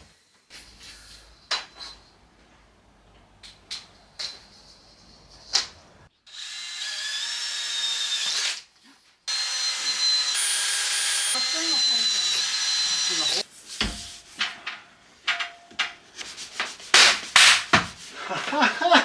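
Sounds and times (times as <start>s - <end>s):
power drill whining: 6.3s - 8.6s, 9.3s - 13.4s.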